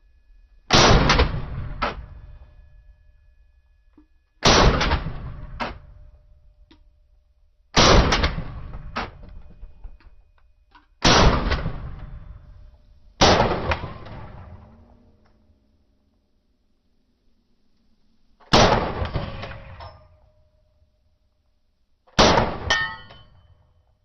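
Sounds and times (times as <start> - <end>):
gunshots with echoing decay: 0.7 - 2.7, 4.4 - 6.2, 7.7 - 9.9, 11.0 - 15.2, 18.5 - 20.3, 22.1 - 23.6.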